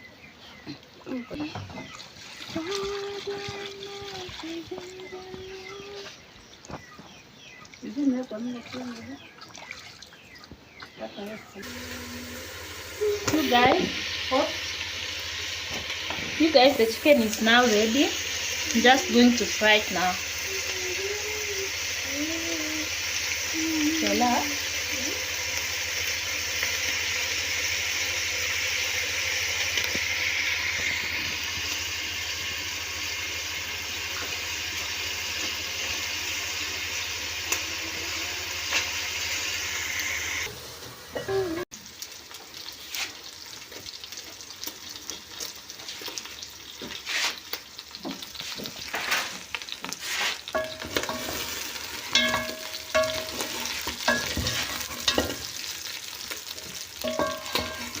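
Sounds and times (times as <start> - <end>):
chicken sizzling in a pan: 11.6 - 58.0.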